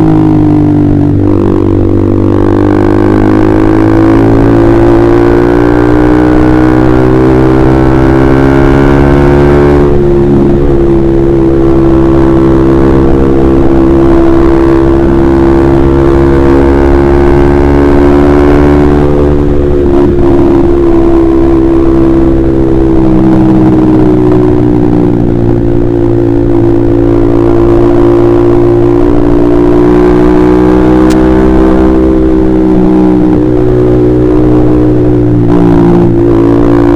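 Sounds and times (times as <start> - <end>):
motorcycle engine running: 0.0 - 36.9.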